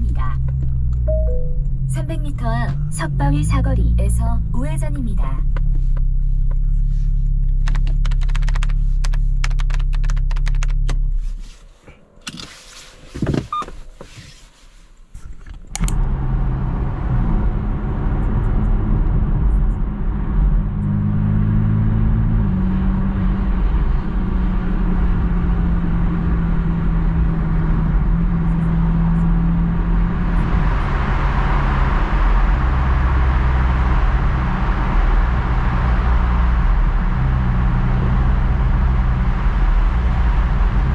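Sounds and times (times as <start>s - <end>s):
scattered clicks: 7.6s - 10.8s, 15.6s - 16.0s.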